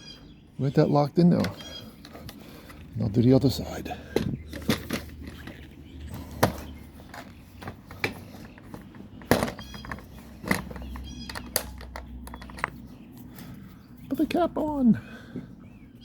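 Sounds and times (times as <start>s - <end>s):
cart parts clicking and knocking: 4.0s - 13.3s.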